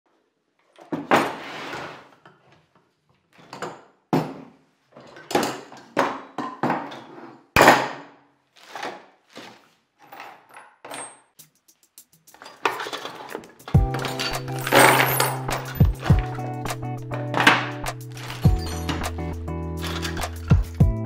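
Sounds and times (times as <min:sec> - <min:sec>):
knocks and thuds: 0:14.7 - 0:16.4.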